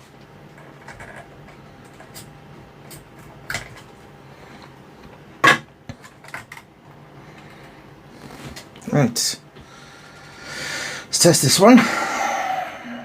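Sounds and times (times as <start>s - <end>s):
faint steady hum: 0.0s - 13.0s
parts and tools clicking and knocking: 0.5s - 3.9s, 5.4s - 6.7s.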